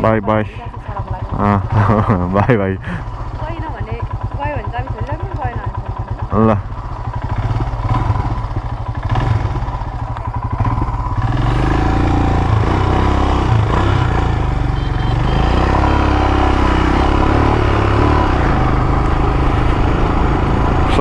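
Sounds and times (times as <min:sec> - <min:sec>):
motorcycle engine: 0:00.0 - 0:21.0.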